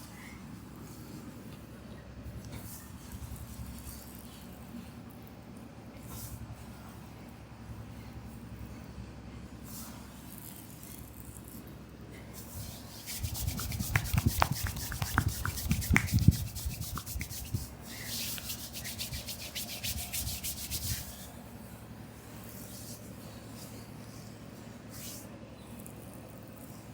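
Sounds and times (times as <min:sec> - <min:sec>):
hands rubbing oiled skin: 0:12.5 - 0:21.3.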